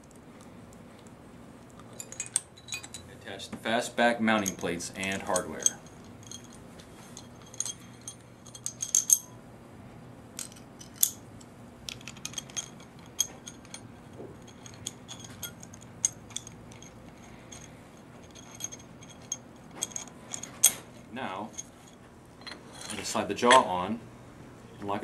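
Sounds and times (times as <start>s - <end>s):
metallic clinks and taps: 1.8s - 3.1s, 4.3s - 9.4s, 10.4s - 20.8s, 21.5s - 23.7s
metal clanks: 11.9s - 21.8s, 22.4s - 23.8s.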